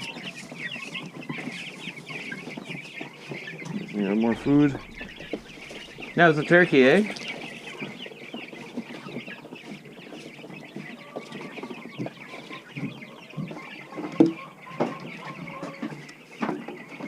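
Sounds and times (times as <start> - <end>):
chickens and turkeys clucking: 0.0 - 17.0
sharp knocks: 4.2 - 7.4.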